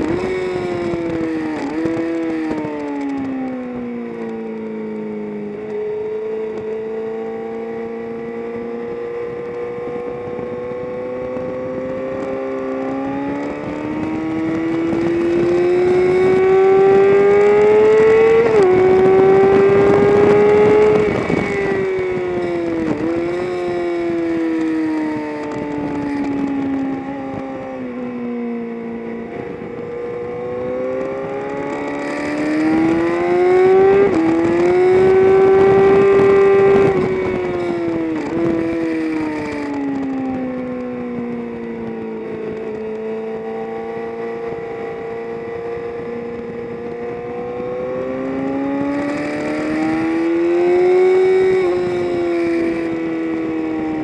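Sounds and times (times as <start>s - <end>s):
wind and road rushing: 0.0s - 54.0s.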